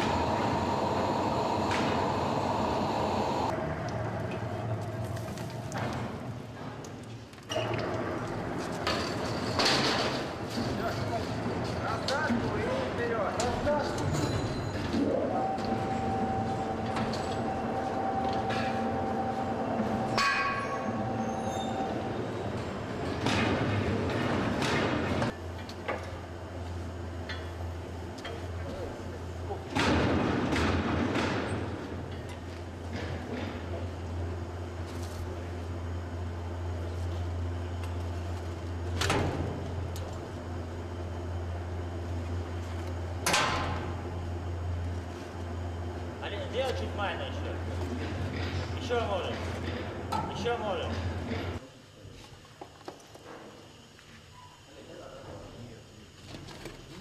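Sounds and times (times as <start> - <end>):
mechanical whine: 0.0 - 6.2, 13.9 - 25.4
machinery rumble: 0.0 - 7.2, 7.8 - 51.6.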